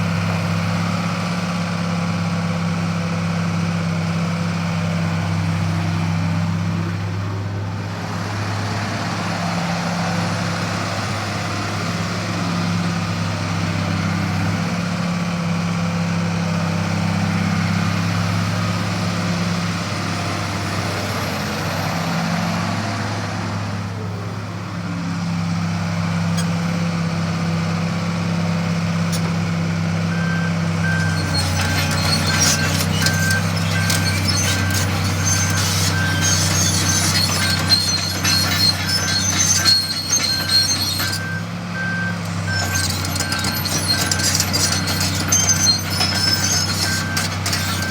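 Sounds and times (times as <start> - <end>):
excavator diesel engine running: 0.0 - 47.9
metallic clanking and rattling: 30.8 - 47.9.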